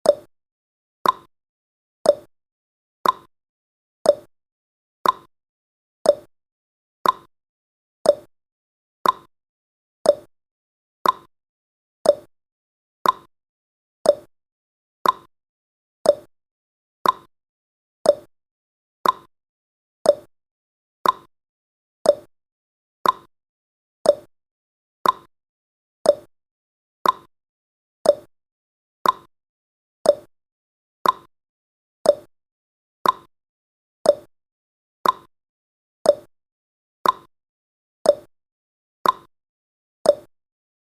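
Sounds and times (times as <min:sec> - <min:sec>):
clock tick-tock clicks: 0:00.0 - 0:00.3, 0:01.0 - 0:01.3, 0:02.0 - 0:02.3, 0:03.0 - 0:03.3, 0:04.0 - 0:04.3, 0:05.0 - 0:05.3, 0:06.0 - 0:06.3, 0:07.0 - 0:07.3, 0:08.0 - 0:08.3, 0:09.0 - 0:09.3, 0:10.0 - 0:10.3, 0:11.0 - 0:11.3, 0:12.0 - 0:12.3, 0:13.0 - 0:13.3, 0:14.0 - 0:14.3, 0:15.0 - 0:15.3, 0:16.0 - 0:16.3, 0:17.0 - 0:17.3, 0:18.0 - 0:18.3, 0:19.0 - 0:19.3, 0:20.0 - 0:20.3, 0:21.0 - 0:21.3, 0:22.0 - 0:22.3, 0:23.0 - 0:23.3, 0:24.0 - 0:24.3, 0:25.0 - 0:25.3, 0:26.0 - 0:26.3, 0:27.0 - 0:27.3, 0:28.0 - 0:28.3, 0:29.0 - 0:29.3, 0:30.0 - 0:30.3, 0:31.0 - 0:31.3, 0:32.0 - 0:32.3, 0:33.0 - 0:33.3, 0:34.0 - 0:34.3, 0:35.0 - 0:35.3, 0:36.0 - 0:36.3, 0:37.0 - 0:37.3, 0:38.0 - 0:38.3, 0:39.0 - 0:39.3, 0:40.0 - 0:40.4.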